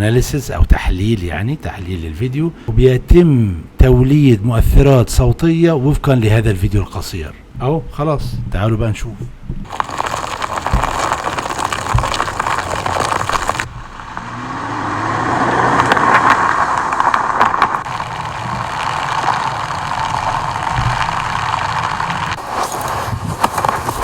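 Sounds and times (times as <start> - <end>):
car engine accelerating: 11.3 - 22.4.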